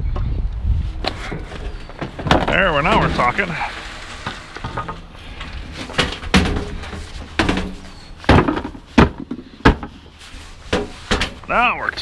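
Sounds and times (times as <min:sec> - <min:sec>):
wind rumble on microphone: 0:00.0 - 0:01.8
junk knocking in a dumpster: 0:05.8 - 0:10.0.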